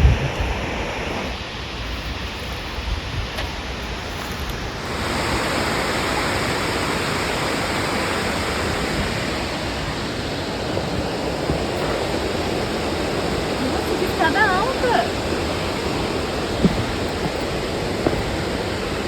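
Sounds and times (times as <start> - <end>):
falling water rushing: 4.5 - 19.0.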